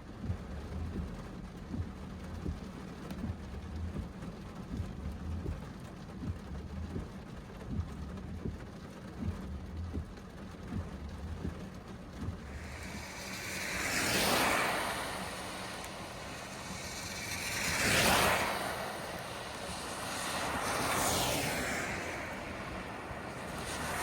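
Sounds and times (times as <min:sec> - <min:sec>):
rain drops ticking: 0:00.0 - 0:24.0
low rumble: 0:00.2 - 0:05.6, 0:09.2 - 0:24.0
broad hiss: 0:12.5 - 0:24.0.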